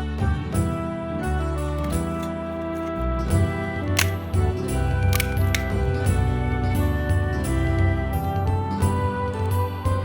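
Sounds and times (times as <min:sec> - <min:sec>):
instrumental background music: 0:00.0 - 0:10.0.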